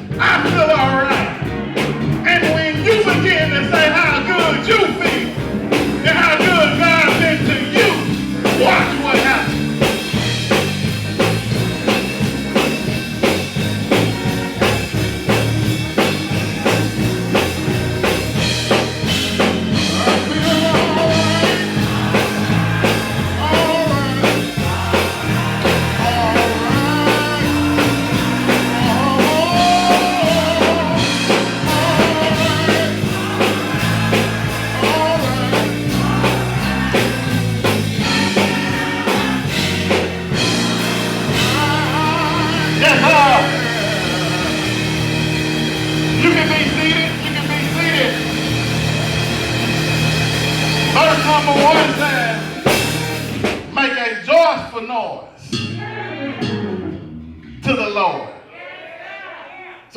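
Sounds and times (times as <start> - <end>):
walking bass line: 0.0 - 53.6
steady drum beat: 0.0 - 53.8
church band playing: 0.0 - 58.5
person singing: 19.7 - 48.4.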